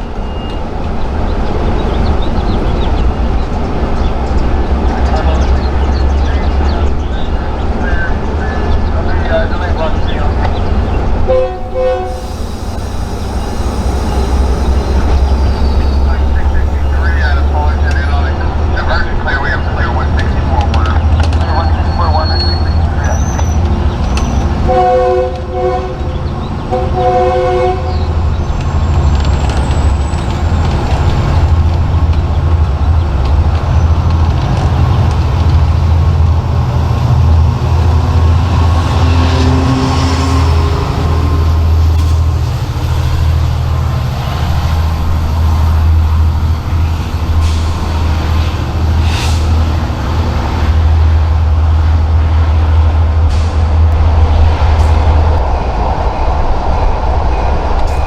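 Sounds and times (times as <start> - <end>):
diesel locomotive engine rumbling: 0.0 - 58.0
train horn blasts: 11.1 - 18.0, 21.6 - 28.4.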